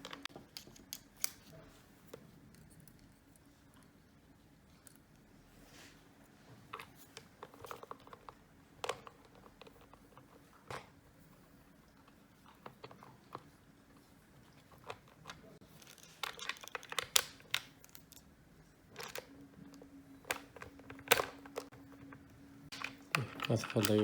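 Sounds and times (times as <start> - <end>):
handling clicks scrapes and knocks: 18.9 - 24.0
screwdriver turning screws in plastic: 22.8 - 24.0.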